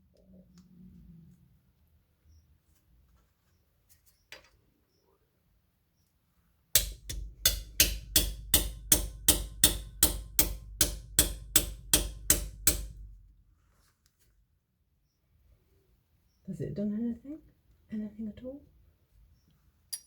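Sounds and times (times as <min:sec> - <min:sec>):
hammer striking steel: 0:06.8 - 0:13.2.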